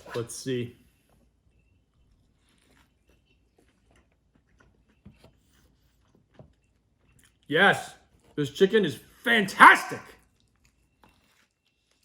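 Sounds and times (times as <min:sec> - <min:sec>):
faint chewing: 0:00.9 - 0:08.4, 0:10.2 - 0:12.0.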